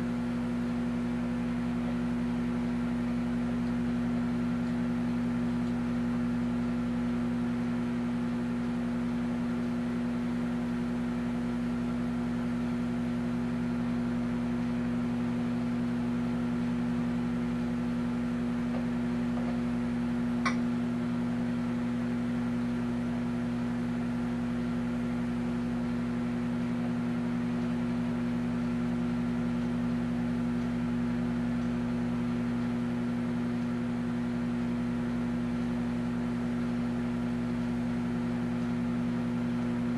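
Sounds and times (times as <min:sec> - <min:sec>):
microwave oven humming: 0:00.0 - 0:39.9
microwave tick: 0:01.2 - 0:07.8, 0:17.6 - 0:21.6, 0:24.4 - 0:39.9.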